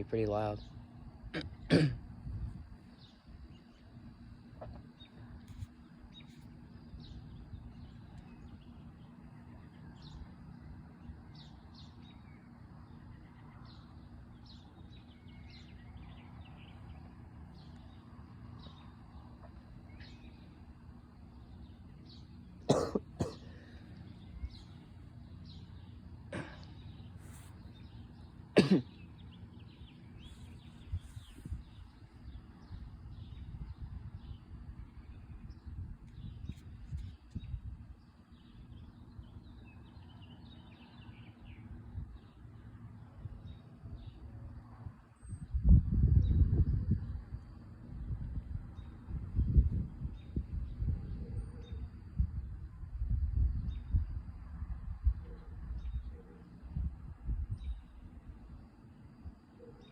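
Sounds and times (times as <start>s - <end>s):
steady low hum: 0.0s - 59.9s
person coughing: 1.3s - 2.0s, 22.7s - 23.7s, 26.3s - 26.7s, 28.6s - 28.9s
faint bird chirps: 48.8s - 54.1s, 57.5s - 59.9s.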